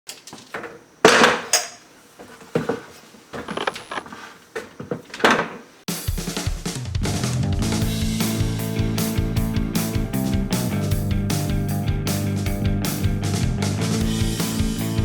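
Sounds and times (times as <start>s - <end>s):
hard objects knocking and clattering: 2.4s - 5.7s
music with guitar and drums: 5.9s - 15.0s.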